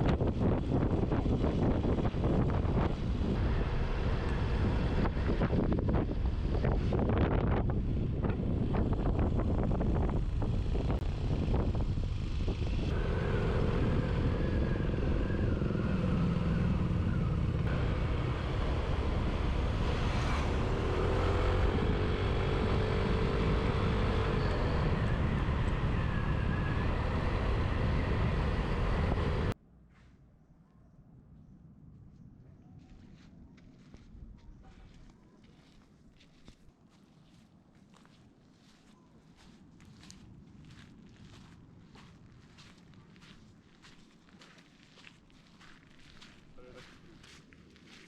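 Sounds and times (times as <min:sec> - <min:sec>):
wind on microphone: 0:00.0 - 0:29.6
vehicle engine rumble: 0:00.0 - 0:48.0.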